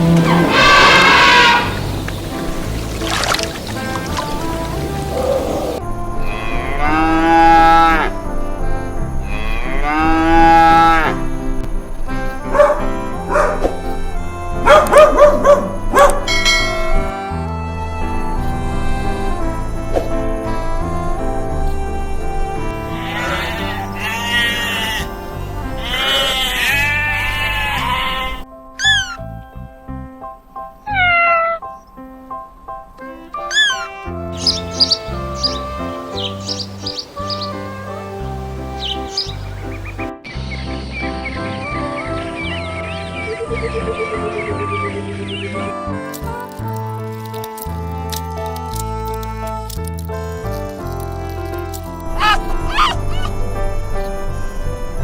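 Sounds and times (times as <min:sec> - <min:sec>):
cow mooing: 0:00.0 - 0:02.1, 0:03.8 - 0:08.4, 0:09.1 - 0:11.3, 0:22.7 - 0:28.4
long wavering animal cries: 0:00.0 - 0:02.1, 0:04.6 - 0:11.2, 0:21.2 - 0:29.2, 0:30.8 - 0:31.7, 0:33.0 - 0:39.8, 0:52.1 - 0:55.0
background music: 0:00.0 - 0:55.0
cat meowing: 0:22.9 - 0:25.1, 0:25.8 - 0:29.2, 0:30.9 - 0:31.7, 0:33.0 - 0:36.4, 0:52.1 - 0:53.4.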